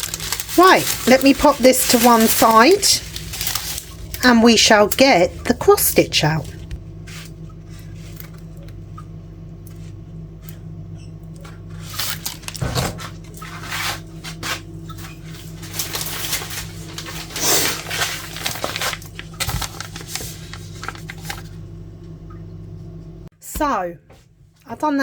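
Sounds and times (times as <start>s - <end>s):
packaging rustling: 0.0s - 5.2s, 11.8s - 21.6s
steady low hum: 0.0s - 25.0s.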